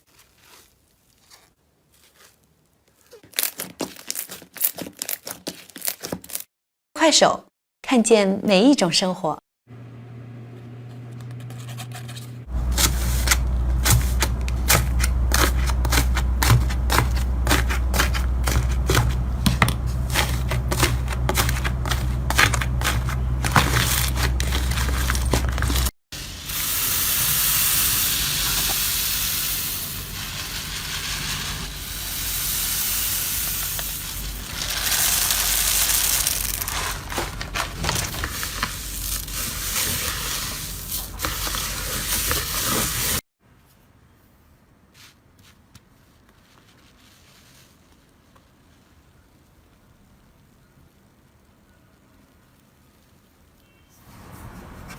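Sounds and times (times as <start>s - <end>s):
slime crackling and popping: 0.0s - 6.4s.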